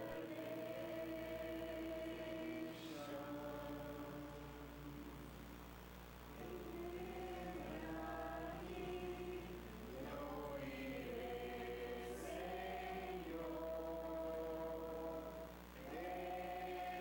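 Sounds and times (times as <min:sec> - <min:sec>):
choir singing held notes: 0:00.0 - 0:05.5, 0:06.3 - 0:17.0.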